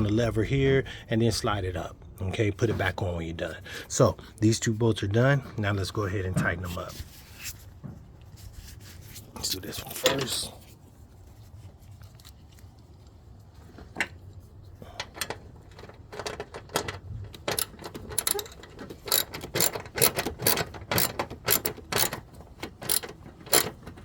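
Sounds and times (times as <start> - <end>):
socket ratchet clicking: 15.1 - 24.0.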